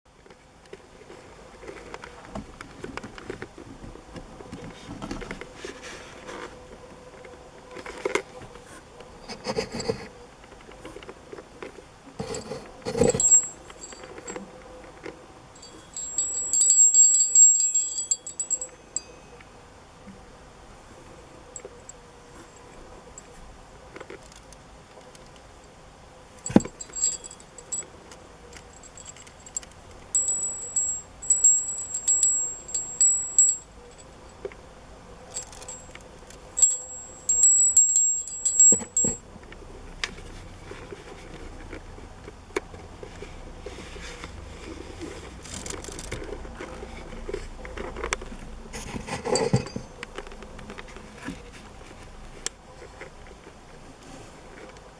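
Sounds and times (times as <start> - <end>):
rustling: 12.2 - 14.4, 15.6 - 19.2, 26.4 - 27.8, 28.6 - 34.2, 36.6 - 39.2
brass bell ringing: 13.2 - 14.0, 15.6 - 19.3, 26.5 - 27.8, 30.2 - 33.6, 36.6 - 39.2.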